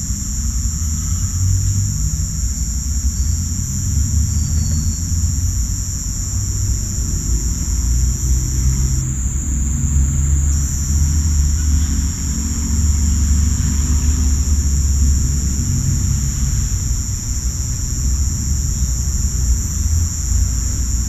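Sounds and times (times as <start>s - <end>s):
crickets and cicadas shrilling: 0.0s - 21.0s.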